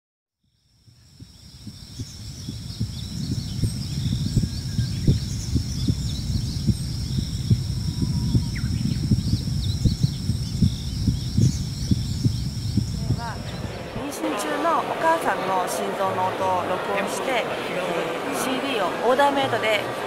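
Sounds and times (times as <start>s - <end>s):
insect trilling: 0.6s - 14.0s
muffled heartbeat thumps: 0.8s - 14.1s
birds chirping: 0.8s - 20.0s.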